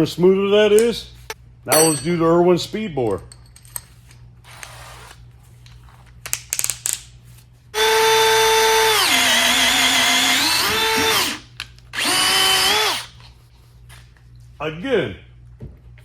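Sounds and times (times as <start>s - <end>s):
drill motor whine boring wood: 7.8s - 11.4s, 12.0s - 13.1s.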